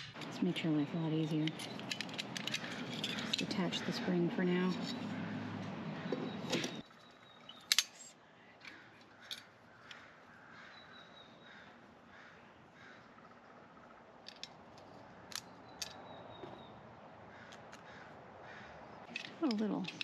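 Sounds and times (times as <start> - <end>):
crows cawing: 2.5 - 6.7, 8.6 - 14.0, 17.2 - 19.0.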